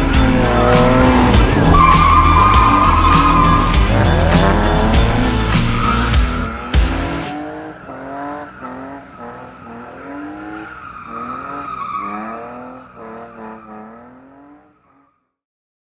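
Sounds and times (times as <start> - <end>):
tyre squeal: 0.0 - 6.4
car engines revving: 0.0 - 15.0.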